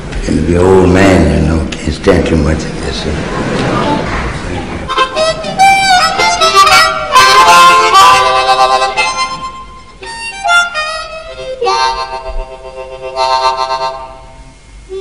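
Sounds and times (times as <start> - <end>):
harmonica melody with bent notes: 4.9 - 15.0.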